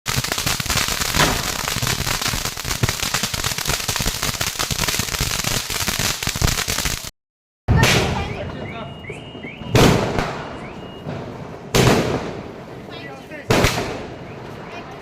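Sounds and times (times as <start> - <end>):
fireworks crackling: 0.1 - 7.1.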